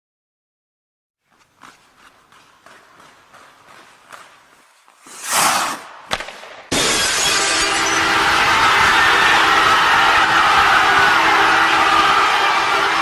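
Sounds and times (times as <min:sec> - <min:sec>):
sharp crack: 0:05.0 - 0:07.4
loud crash like glass shattering: 0:06.7 - 0:08.1.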